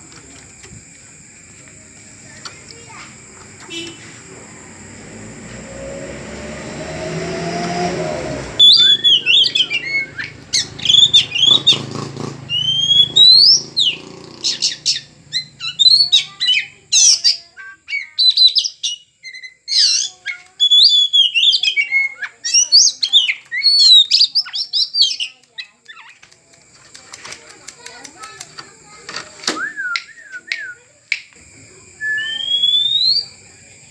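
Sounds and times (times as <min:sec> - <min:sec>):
rising hum and noise: 0:04.2 - 0:09.9
bird singing whistled phrases: 0:08.5 - 0:11.8, 0:12.5 - 0:25.4, 0:29.6 - 0:30.8, 0:32.0 - 0:33.4.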